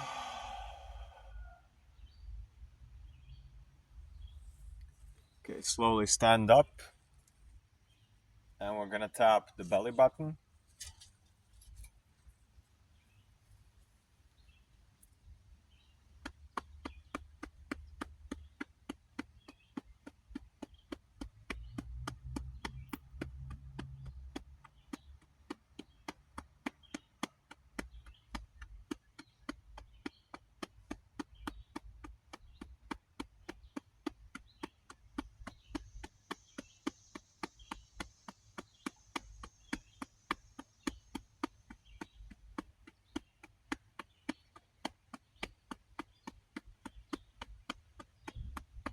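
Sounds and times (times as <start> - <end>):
fingers tapping on belly: 0.0 - 1.5, 16.1 - 48.9.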